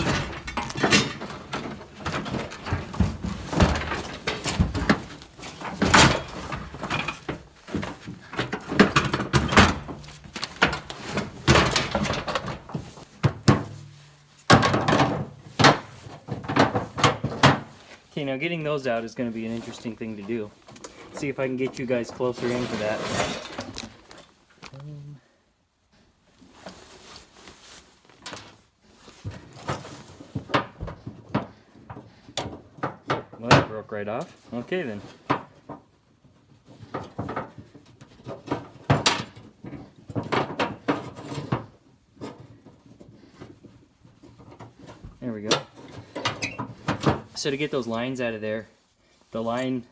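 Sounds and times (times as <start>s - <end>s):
tools clattering on workbench: 0.0s - 17.8s, 20.7s - 24.3s, 36.6s - 47.3s.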